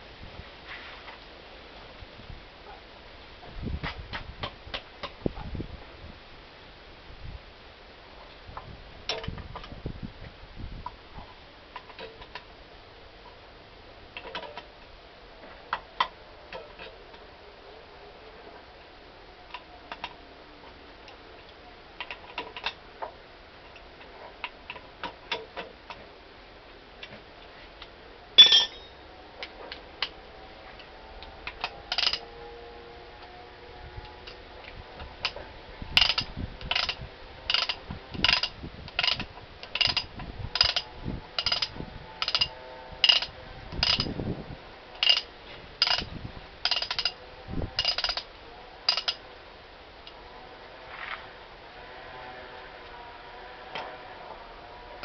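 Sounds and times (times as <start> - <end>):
metal clicks and clinks: 28.4 - 28.9, 31.5 - 32.2, 36.0 - 44.1, 45.0 - 45.2, 45.8 - 47.2, 47.8 - 48.3, 48.9 - 49.2
ringing metallic strokes: 28.4 - 29.0.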